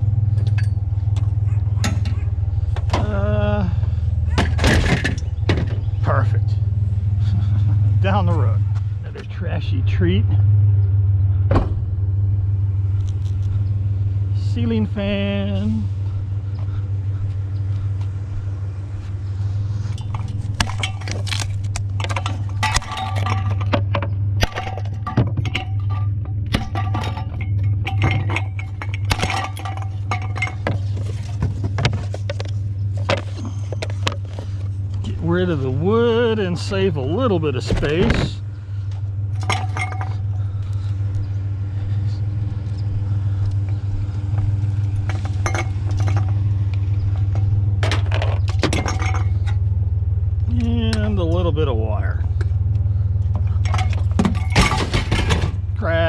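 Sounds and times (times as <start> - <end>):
truck engine idling: 0.0 - 56.0
metal fan parts clinking and rattling: 0.3 - 3.2, 19.5 - 41.9, 42.5 - 51.7, 52.3 - 55.8
short clinks and knocks: 19.9 - 34.4, 39.4 - 40.5.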